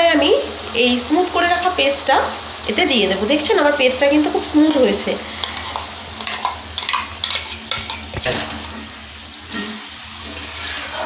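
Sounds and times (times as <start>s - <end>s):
paste sizzling in hot oil: 0.1s - 11.0s
utensil scraping and clinking pan: 4.7s - 8.8s.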